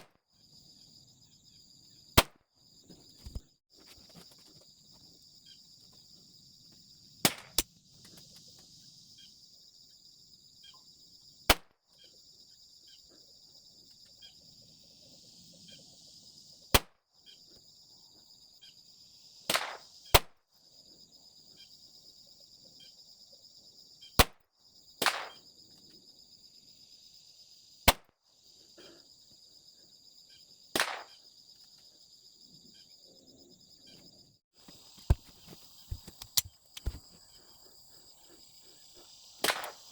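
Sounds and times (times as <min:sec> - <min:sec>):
high-pitched insect chorus: 0:00.0 - 0:39.9
pistol shots: 0:19.5 - 0:20.3, 0:25.0 - 0:25.4, 0:30.8 - 0:31.2, 0:39.4 - 0:39.9.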